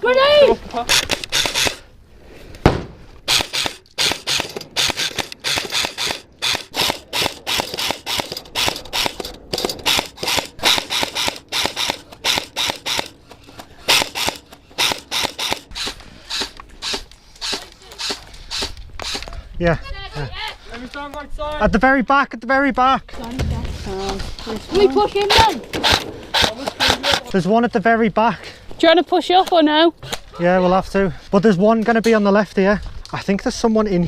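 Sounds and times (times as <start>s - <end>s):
airsoft guns firing: 0.9s - 1.9s, 2.6s - 19.2s, 25.2s - 27.3s.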